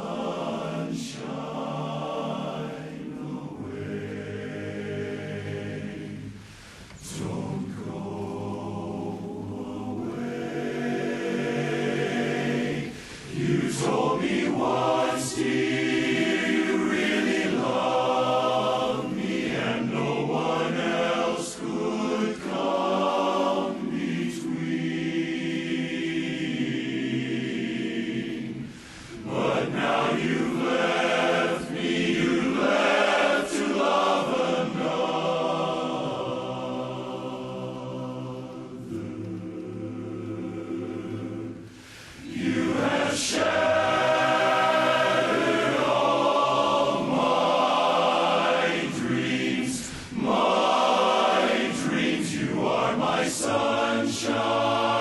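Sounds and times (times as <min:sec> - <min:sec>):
male chorus singing a cappella: 0:00.0 - 0:55.0.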